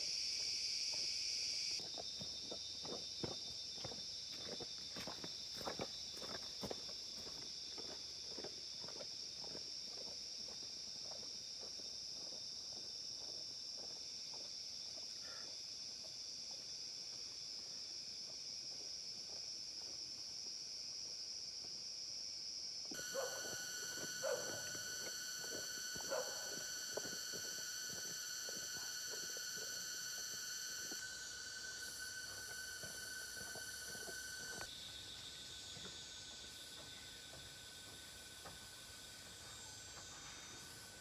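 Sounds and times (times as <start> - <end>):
insects chirping: 0.0 - 41.0.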